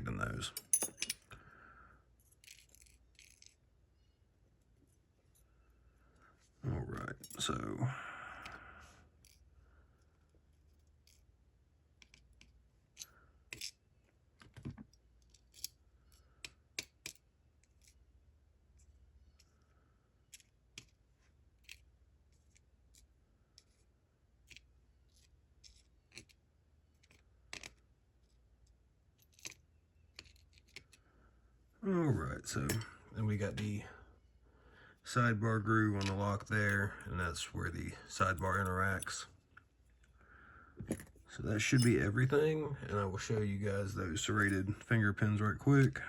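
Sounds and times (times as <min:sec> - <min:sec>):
metal lock parts clicking: 0:00.6 - 0:01.3
faint low hum: 0:17.1 - 0:46.0.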